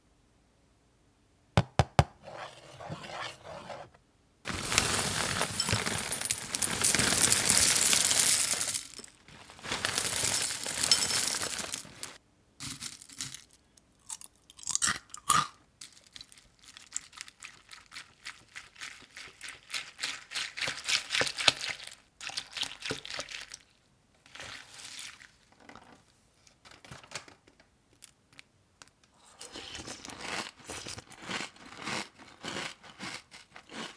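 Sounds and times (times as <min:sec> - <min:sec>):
dry flakes crunching and rustling: 0:04.5 - 0:12.2
packaging crinkling and tearing: 0:04.5 - 0:13.2.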